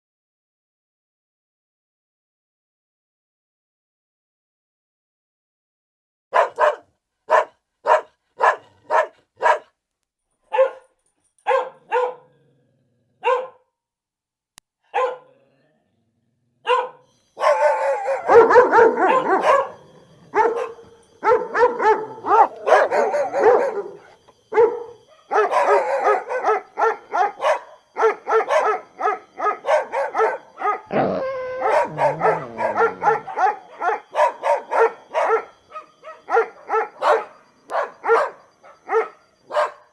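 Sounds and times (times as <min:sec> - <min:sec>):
dog barking: 0:06.3 - 0:09.8, 0:10.5 - 0:12.5, 0:13.2 - 0:13.7, 0:14.8 - 0:15.5, 0:16.6 - 0:39.9.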